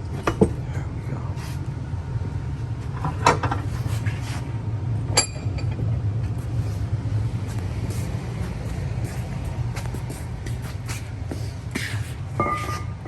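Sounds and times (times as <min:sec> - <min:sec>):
steady low machine hum: 0:00.0 - 0:13.0
metal clanking and ringing: 0:05.1 - 0:05.8, 0:12.4 - 0:13.0.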